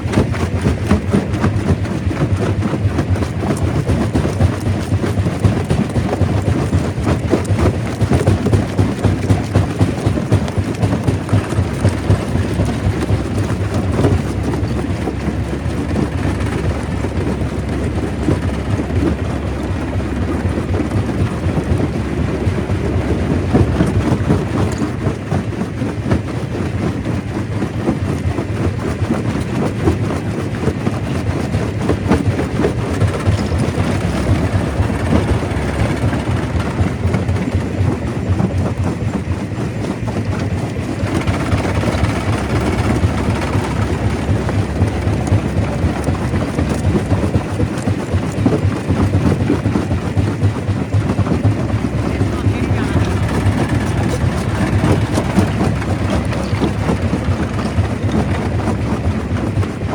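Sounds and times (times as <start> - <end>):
rock rattling and knocking: 0.0 - 59.9
stone crusher rumbling: 31.8 - 38.9, 50.7 - 59.9.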